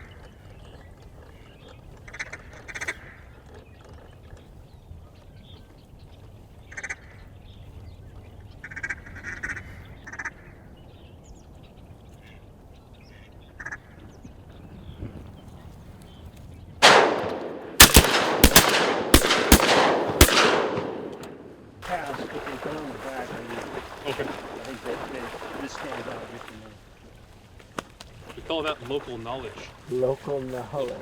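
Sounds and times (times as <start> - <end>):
shotgun shots: 16.8 - 21.8.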